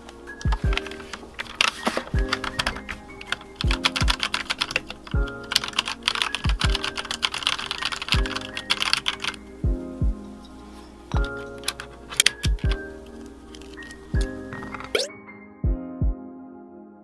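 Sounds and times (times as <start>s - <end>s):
lofi music with drum beat: 0.0s - 13.1s, 14.0s - 16.3s
mechanical keyboard key clacks: 0.4s - 9.4s, 11.2s - 15.1s.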